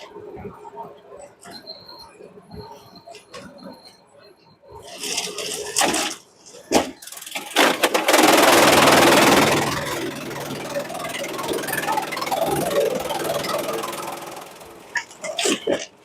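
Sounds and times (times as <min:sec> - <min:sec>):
shredder engine running: 0:07.1 - 0:15.2.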